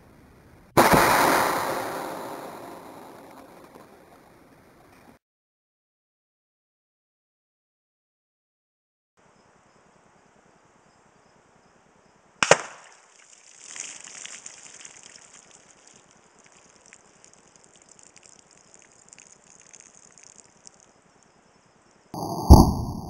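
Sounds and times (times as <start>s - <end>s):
air rifle shot: 0.8s - 4.0s, 22.2s - 23.0s.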